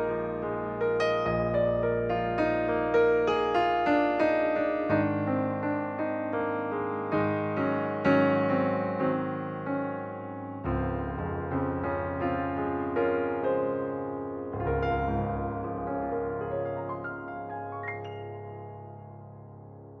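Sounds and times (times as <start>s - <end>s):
electric piano notes: 6.7s - 20.0s.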